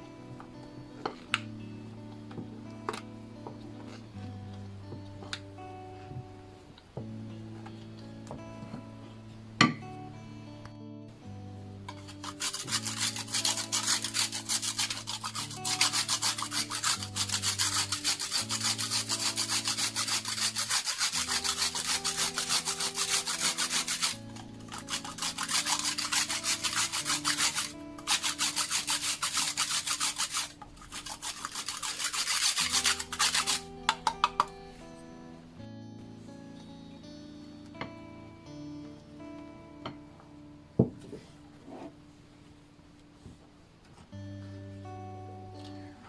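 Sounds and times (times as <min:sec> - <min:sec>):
soft background music: 0:00.0 - 0:46.0
rough scraping strokes: 0:11.9 - 0:33.7.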